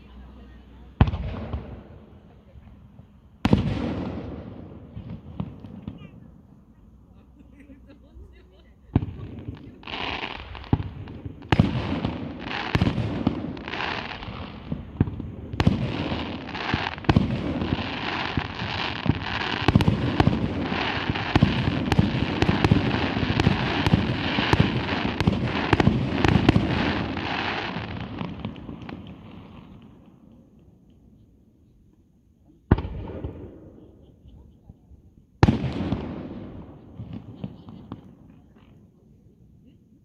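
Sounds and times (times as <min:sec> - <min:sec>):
fireworks bangs and crackles: 0:00.0 - 0:31.4, 0:32.5 - 0:40.0.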